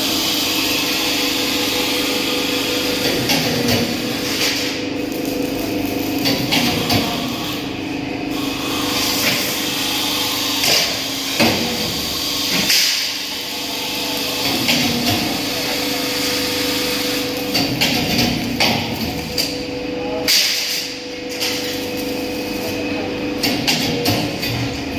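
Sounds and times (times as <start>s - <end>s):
steady machine hum: 0.0s - 24.9s.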